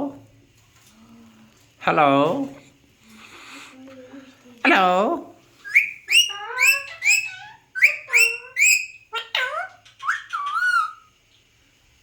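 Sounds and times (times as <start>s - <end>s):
parakeet whistled chirps: 5.6s - 11.2s.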